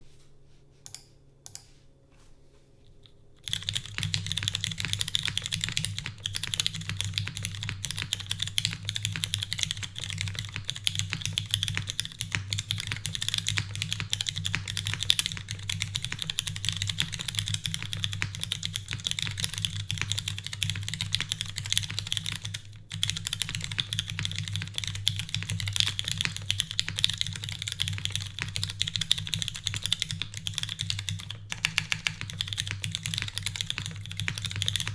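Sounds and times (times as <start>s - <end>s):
typing on mechanical keyboard: 3.4s - 34.9s.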